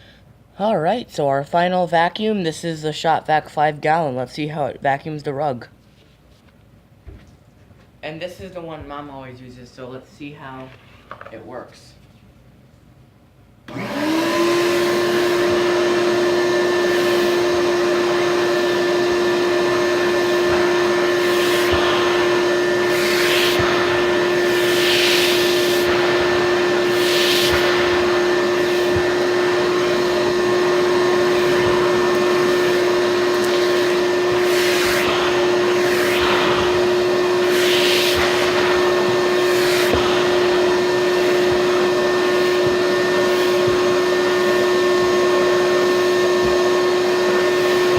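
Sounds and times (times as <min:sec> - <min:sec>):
vacuum cleaner motor whine: 0:13.7 - 0:47.9
rushing air hiss: 0:21.2 - 0:29.0.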